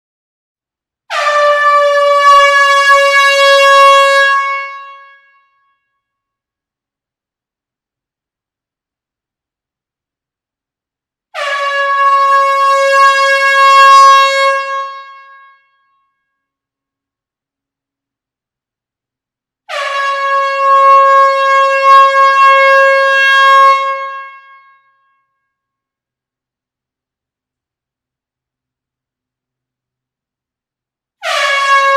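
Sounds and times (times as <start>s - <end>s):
air horn long note: 1.1s - 5.9s, 11.3s - 16.2s, 19.7s - 25.3s, 31.2s - 31.9s.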